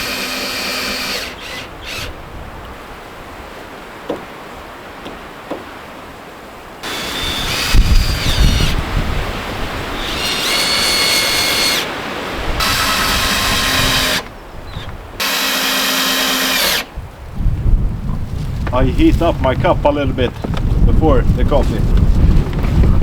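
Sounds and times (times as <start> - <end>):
power drill whine: 0.0 - 2.2, 6.8 - 8.9, 9.8 - 16.9.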